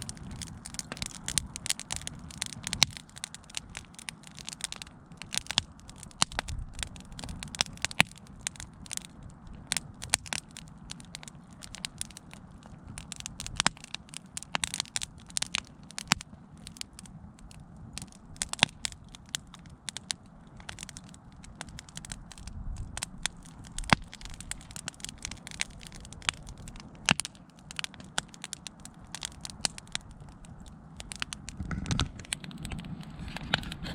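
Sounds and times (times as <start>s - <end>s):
low steady rumble: 0.0s - 33.9s
wood fire crackling: 0.0s - 33.9s.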